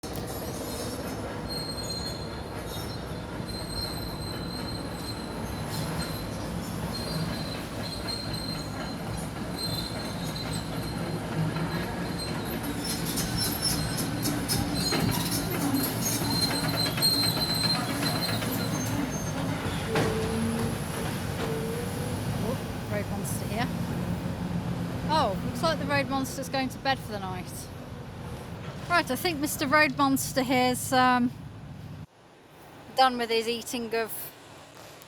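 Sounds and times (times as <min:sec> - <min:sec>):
demolition machinery engine rumble: 0:05.9 - 0:32.1
high metallic squeal: 0:12.2 - 0:22.0.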